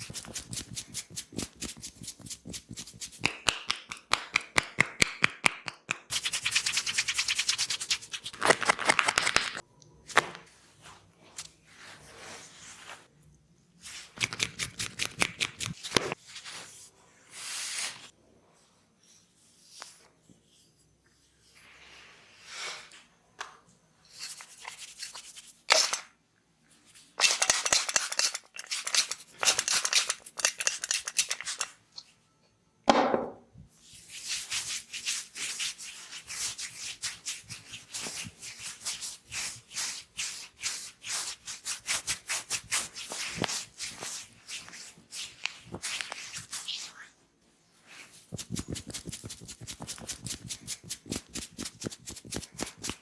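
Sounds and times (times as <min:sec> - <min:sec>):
hands rubbing head and hair: 0:00.0 - 0:09.6, 0:33.9 - 0:47.1, 0:47.8 - 0:53.0.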